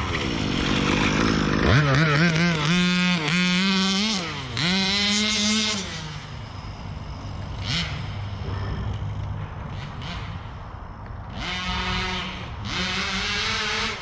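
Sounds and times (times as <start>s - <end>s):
small two-stroke engine revving: 0.0s - 14.0s.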